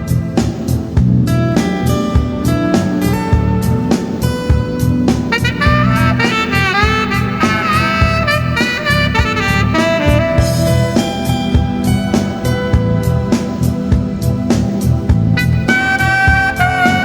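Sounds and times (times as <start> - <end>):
backing track with drums: 0.0 - 17.0
tenor saxophone melody: 1.2 - 13.9, 15.4 - 17.0.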